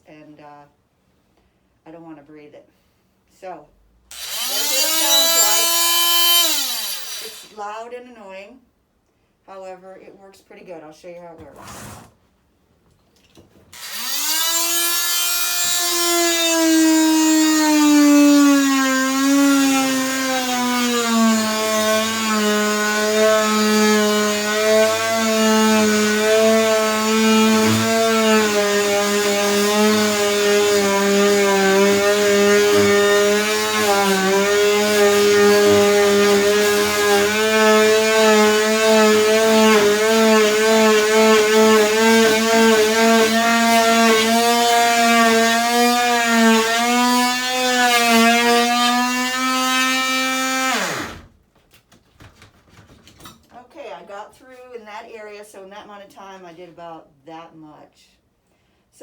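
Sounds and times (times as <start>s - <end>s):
rotary tool cutting wall: 4.1s - 7.6s, 13.7s - 53.4s.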